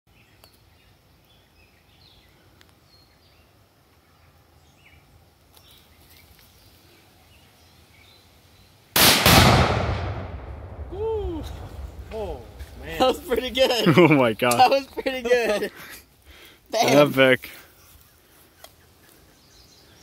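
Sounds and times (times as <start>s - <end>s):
loud explosion blast: 9.0s - 13.5s
low rumble: 9.3s - 13.6s.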